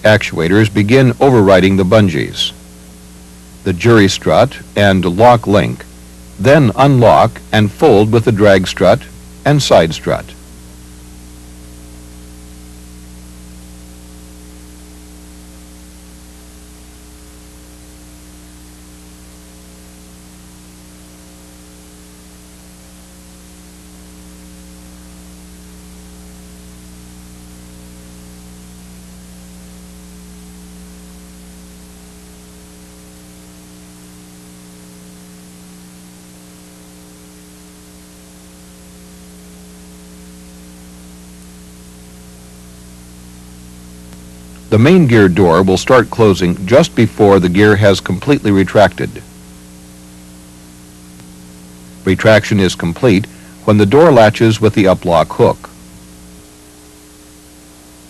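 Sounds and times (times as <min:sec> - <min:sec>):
even hiss: 0:00.0 - 0:12.1, 0:39.5 - 0:58.0
electrical hum: 0:00.0 - 0:58.0.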